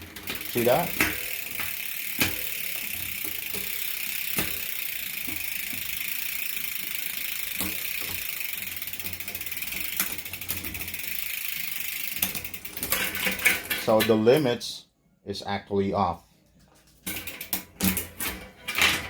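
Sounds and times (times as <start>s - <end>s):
bicycle chain ticking whir: 0.0s - 13.7s, 17.1s - 18.1s
bicycle chain clicks: 0.0s - 14.3s, 17.0s - 19.0s.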